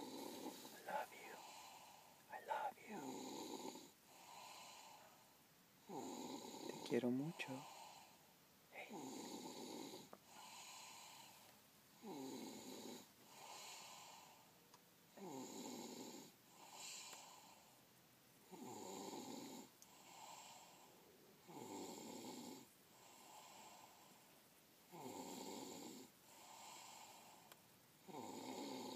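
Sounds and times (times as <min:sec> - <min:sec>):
person snoring: 0:00.0 - 0:05.1, 0:05.8 - 0:08.2, 0:08.8 - 0:11.4, 0:12.0 - 0:14.4, 0:15.2 - 0:17.5, 0:28.0 - 0:28.9
soft breathing: 0:00.0 - 0:05.4, 0:06.5 - 0:09.0, 0:10.0 - 0:11.6, 0:13.0 - 0:14.6, 0:16.5 - 0:17.8, 0:19.6 - 0:21.1, 0:26.2 - 0:27.6.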